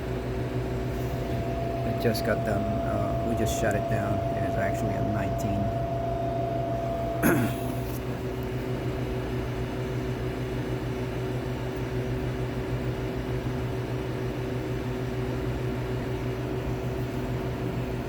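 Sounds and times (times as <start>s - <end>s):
refrigeration equipment humming: 0.0s - 18.0s
higher tone: 1.0s - 8.1s.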